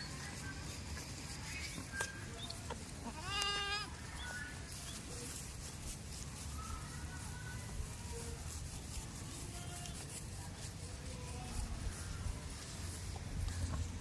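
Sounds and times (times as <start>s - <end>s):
goat bleating: 2.7s - 4.0s.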